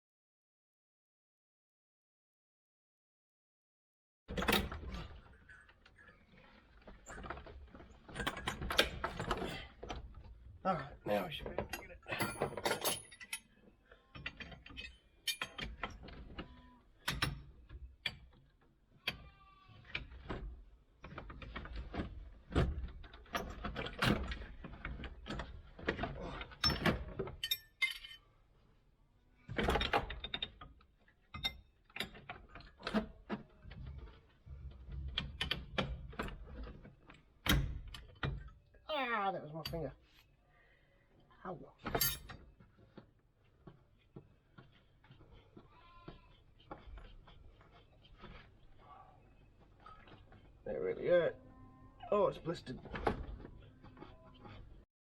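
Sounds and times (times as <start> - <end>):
hand tools clicking and knocking: 11.4 - 16.4.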